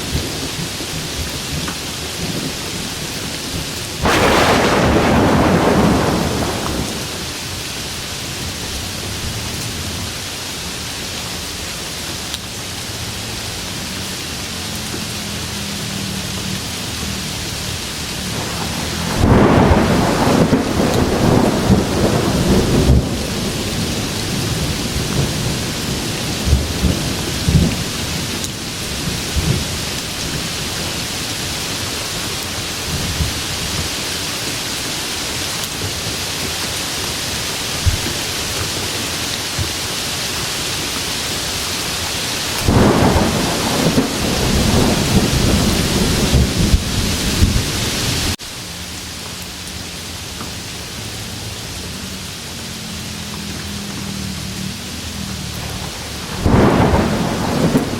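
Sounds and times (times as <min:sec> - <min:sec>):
heavy rain: 0:00.0 - 0:57.9
thunder rumbling: 0:02.2 - 0:07.6, 0:17.8 - 0:31.0, 0:42.4 - 0:48.4, 0:54.4 - 0:57.9.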